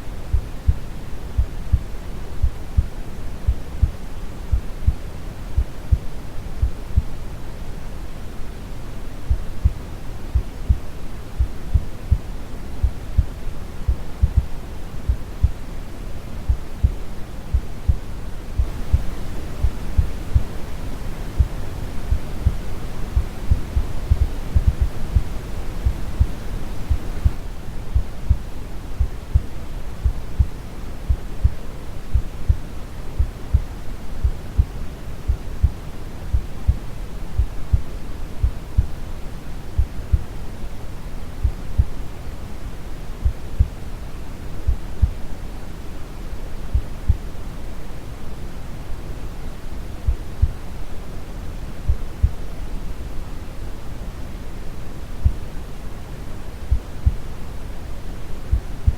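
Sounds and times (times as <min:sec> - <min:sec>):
brown noise hiss: 0:00.0 - 0:58.9
slow heartbeat thumping: 0:00.3 - 0:02.9, 0:03.5 - 0:05.0, 0:05.6 - 0:07.1, 0:09.3 - 0:15.6, 0:18.6 - 0:20.6, 0:21.4 - 0:32.6, 0:33.2 - 0:34.7, 0:35.3 - 0:39.0, 0:39.8 - 0:40.3, 0:41.4 - 0:42.0, 0:44.7 - 0:45.2, 0:50.1 - 0:50.6, 0:51.9 - 0:52.4, 0:56.7 - 0:57.3, 0:58.5 - 0:58.9.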